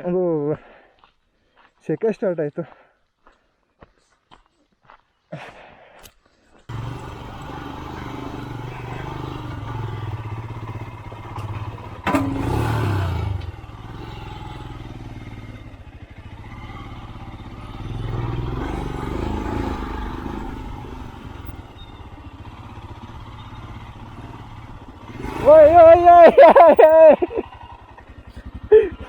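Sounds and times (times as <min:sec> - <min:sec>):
motorcycle engine running: 0:06.7 - 0:29.0.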